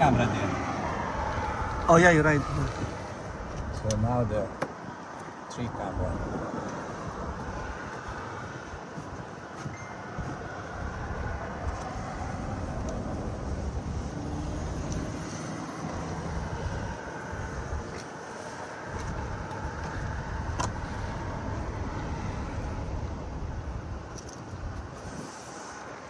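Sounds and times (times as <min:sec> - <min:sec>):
steady low rumble: 0:05.6 - 0:09.1, 0:10.2 - 0:18.0, 0:18.9 - 0:25.2.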